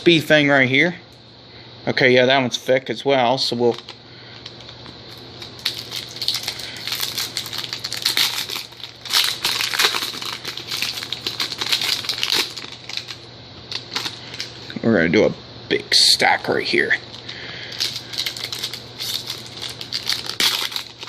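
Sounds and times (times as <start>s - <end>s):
wrappers torn and crinkled: 3.7s - 14.7s, 17.0s - 21.0s.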